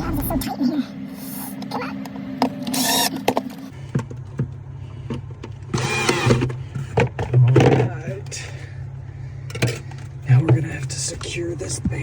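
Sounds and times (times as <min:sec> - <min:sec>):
steady low hum: 0:00.0 - 0:12.0.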